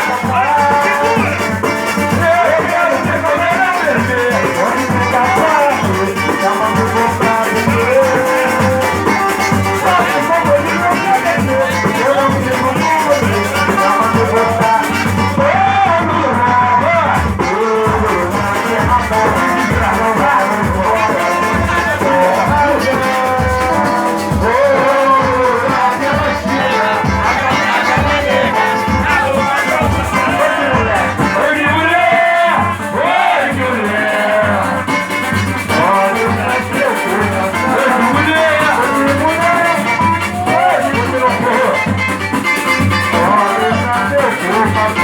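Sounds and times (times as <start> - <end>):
pulsing bass beat: 17.2 - 45.0
pitch-bending melodic line: 17.4 - 45.0.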